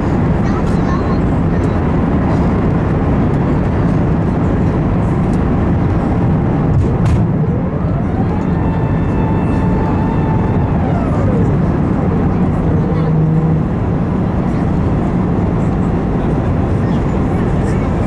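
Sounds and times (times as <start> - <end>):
rush of airflow and engines: 0.0 - 18.0
whine rising in pitch: 7.3 - 14.6.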